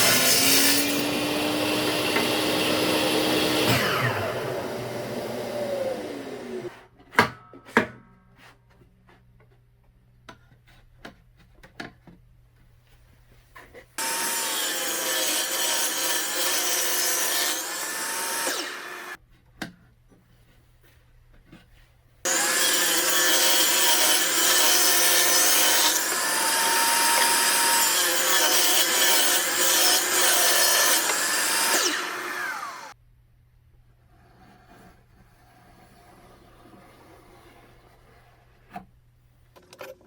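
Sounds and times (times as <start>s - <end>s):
saw blade winding down: 0.0s - 6.7s, 14.0s - 19.2s, 22.3s - 33.0s
power saw cutting wood: 0.0s - 6.9s, 14.0s - 19.2s, 22.3s - 33.0s.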